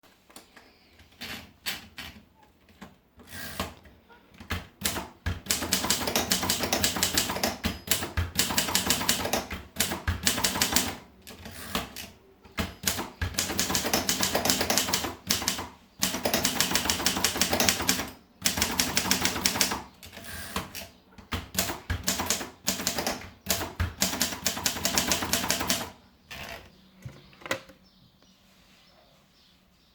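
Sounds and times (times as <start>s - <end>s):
typewriter keystrokes: 4.4s - 25.9s.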